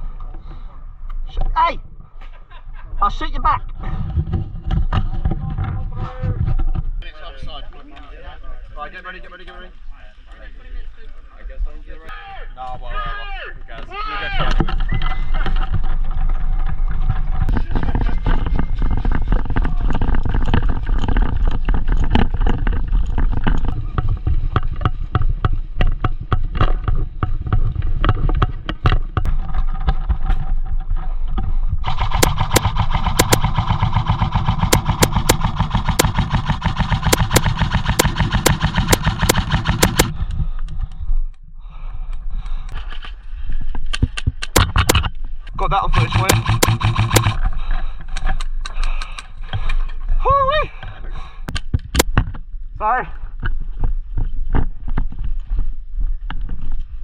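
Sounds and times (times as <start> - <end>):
airsoft gunfire clicking: 31.8 - 40.2, 44.4 - 45.1, 45.9 - 47.4
automatic airsoft fire buzzing: 31.8 - 40.2, 45.9 - 47.5.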